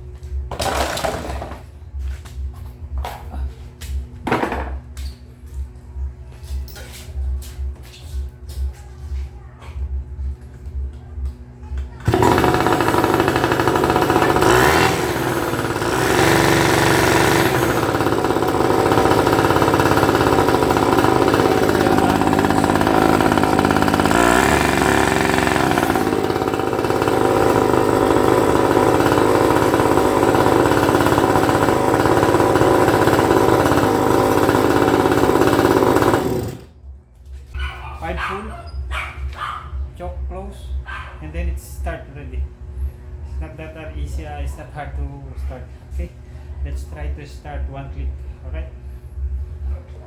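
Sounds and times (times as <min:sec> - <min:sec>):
outboard motor running: 0:12.0 - 0:36.8.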